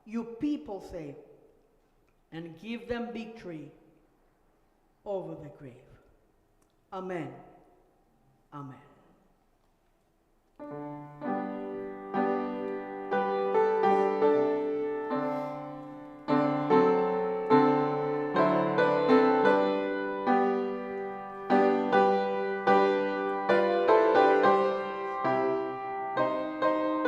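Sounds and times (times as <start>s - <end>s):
slow piano chords: 10.6s - 27.0s.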